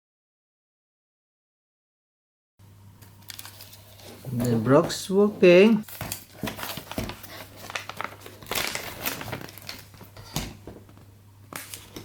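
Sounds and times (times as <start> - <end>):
packaging crinkling: 3.3 - 4.6, 5.7 - 10.8, 11.5 - 12.0.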